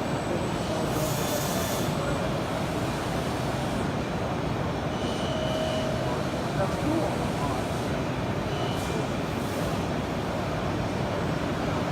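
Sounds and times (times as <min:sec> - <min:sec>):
busy exhibition hall background noise: 0:00.0 - 0:11.9.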